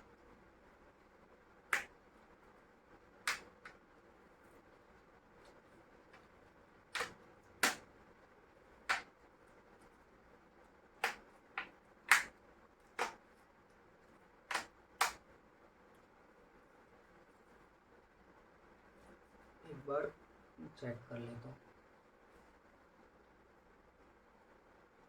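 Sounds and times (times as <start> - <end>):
clicks and taps inside laptop: 1.7 - 2.0, 3.2 - 3.8, 6.9 - 7.9, 8.8 - 9.2, 11.0 - 13.2, 14.5 - 15.2.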